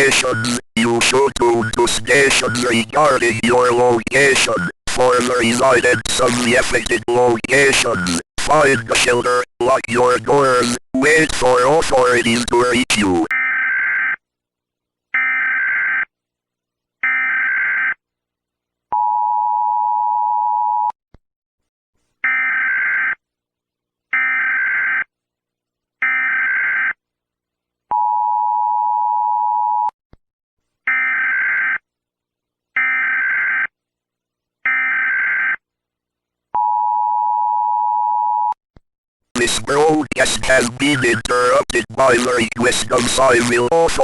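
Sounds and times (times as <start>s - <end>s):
digital data screeches: 0.0s - 3.6s.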